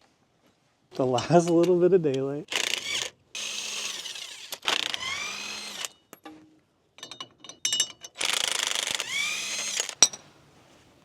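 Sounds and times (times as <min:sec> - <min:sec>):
power tool driving bolts: 0:01.3 - 0:06.2, 0:07.9 - 0:10.2.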